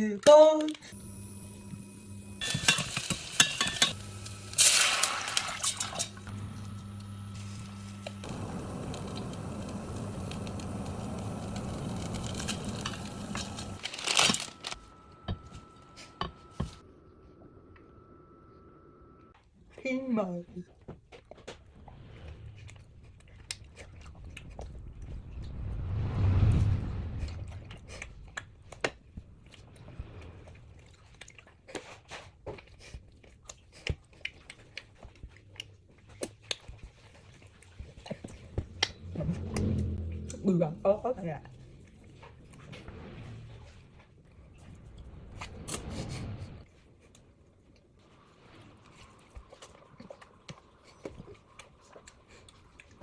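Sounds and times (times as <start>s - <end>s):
plastic packet crinkling: 12.2s - 14.8s
person chewing: 21.1s - 25.2s, 27.7s - 39.1s, 49.2s - 53.0s.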